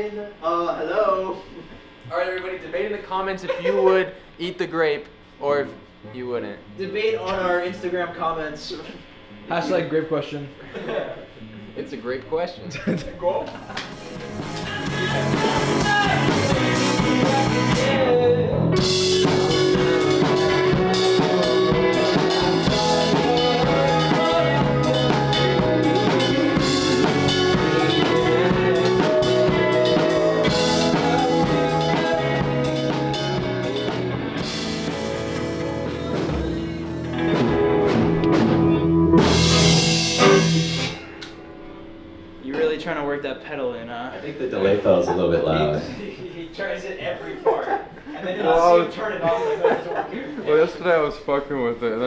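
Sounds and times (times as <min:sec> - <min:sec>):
rock band playing: 0:13.4 - 0:42.4
lead guitar with delay: 0:13.5 - 0:42.4
person singing: 0:14.5 - 0:33.9.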